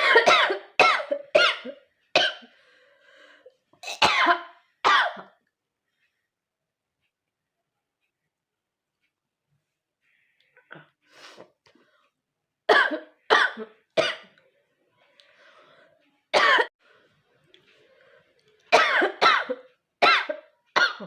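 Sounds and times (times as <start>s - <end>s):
woman coughing: 0.0s - 2.5s, 3.8s - 5.4s, 12.7s - 14.3s, 16.4s - 16.7s, 18.7s - 21.0s
faint breathing: 2.4s - 3.7s, 10.0s - 12.2s, 15.0s - 16.1s, 16.8s - 18.4s.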